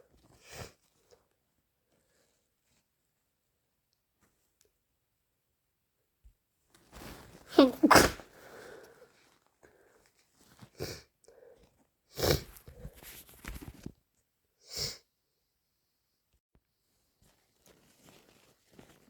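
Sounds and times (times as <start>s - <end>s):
person sniffling: 7.0s - 9.0s
person sneezing: 7.5s - 8.7s.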